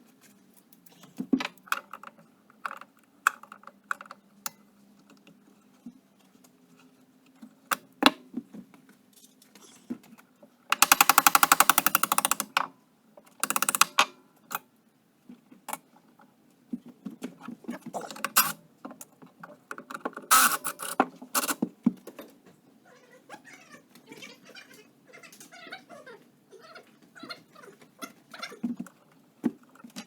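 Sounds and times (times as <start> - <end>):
hand tool clicks: 10.8 - 12.6, 13.4 - 14.1
metal parts knocking and clinking: 10.8 - 12.6, 18.0 - 18.6.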